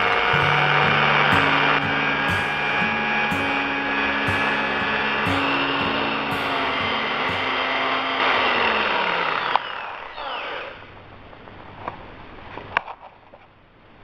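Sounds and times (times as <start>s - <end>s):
electric drill running: 3.0s - 10.8s.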